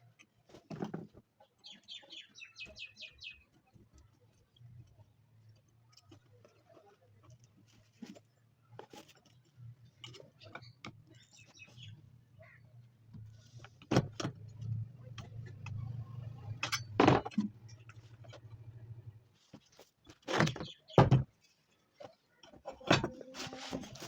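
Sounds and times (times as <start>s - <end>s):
small parts and tools clicking: 3.5s - 11.6s.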